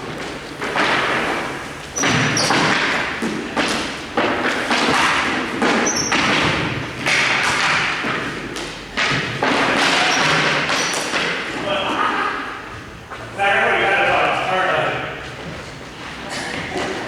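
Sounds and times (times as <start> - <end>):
high squeaks: 5.8 - 6.2.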